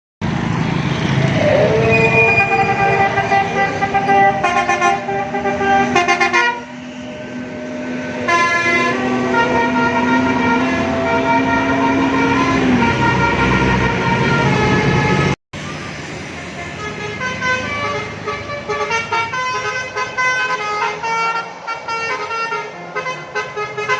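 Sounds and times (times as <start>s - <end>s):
engine and traffic rumble: 0.2s - 23.9s
musical air horn tune: 1.8s - 15.4s
short loud horn blasts: 2.0s - 7.2s, 8.3s - 15.4s.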